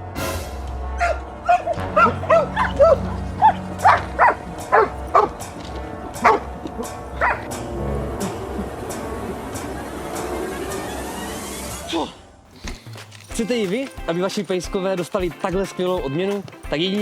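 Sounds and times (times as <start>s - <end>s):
background music: 0.0s - 17.0s
dog barking and yipping: 1.0s - 7.6s.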